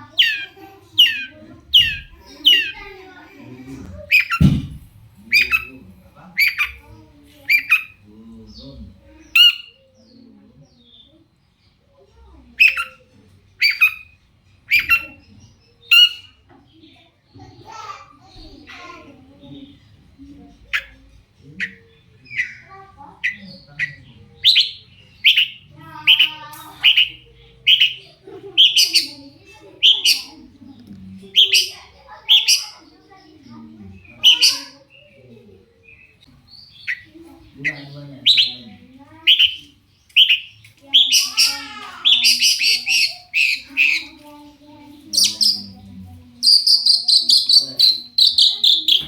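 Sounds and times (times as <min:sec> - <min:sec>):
bird squawking calls: 0:00.0 - 0:02.9, 0:04.0 - 0:04.5, 0:05.3 - 0:05.8, 0:06.4 - 0:06.8, 0:07.4 - 0:08.0, 0:12.6 - 0:15.2, 0:20.6 - 0:30.5, 0:31.3 - 0:33.0, 0:34.0 - 0:34.9, 0:39.2 - 0:44.2, 0:46.4 - 0:49.0.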